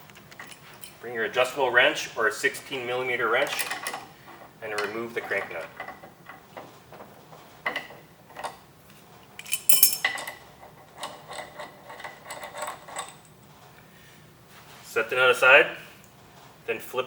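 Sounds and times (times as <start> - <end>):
wrench and nut clinking: 0.0 - 1.0, 2.6 - 8.6, 9.3 - 13.4.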